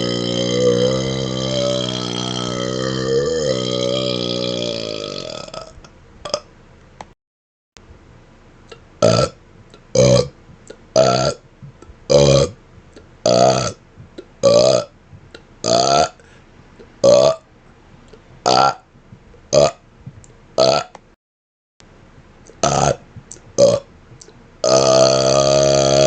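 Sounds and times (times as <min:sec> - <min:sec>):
man burping: 0:00.0 - 0:06.5, 0:09.0 - 0:10.4, 0:11.0 - 0:12.6, 0:13.2 - 0:14.9, 0:15.6 - 0:16.2, 0:17.0 - 0:17.4, 0:18.4 - 0:18.9, 0:19.5 - 0:19.8, 0:20.6 - 0:21.0, 0:22.6 - 0:23.9, 0:24.6 - 0:26.0.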